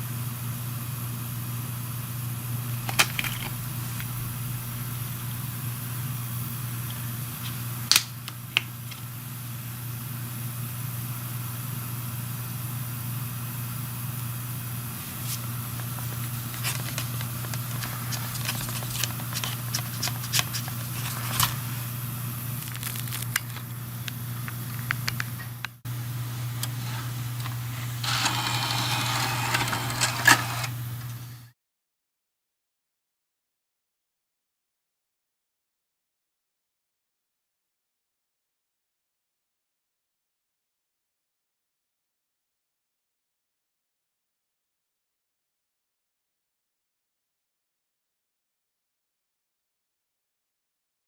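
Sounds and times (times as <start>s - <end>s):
low hum: 1.1s - 7.9s
packaging rustling: 2.8s - 4.1s, 15.1s - 21.8s, 22.6s - 23.6s.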